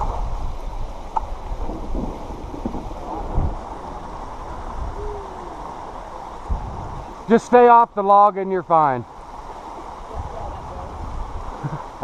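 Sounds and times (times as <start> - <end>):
wind buffeting microphone: 0.0 - 7.4, 9.9 - 12.0
creek water flowing: 0.0 - 12.0.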